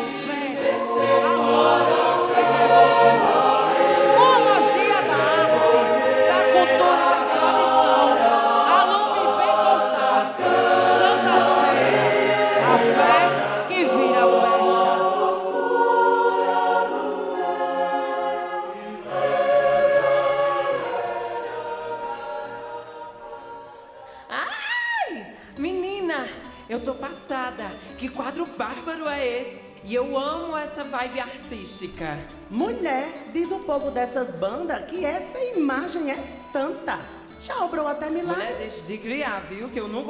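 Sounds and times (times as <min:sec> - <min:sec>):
choir singing sustained chords: 0:00.0 - 0:24.4.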